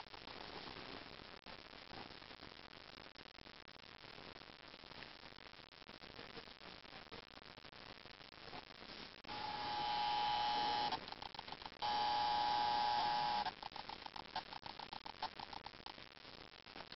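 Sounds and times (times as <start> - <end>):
camera electric buzz: 9.3 - 11.0, 11.8 - 13.5
rapid stuttering clicks: 10.8 - 11.8, 13.0 - 16.5.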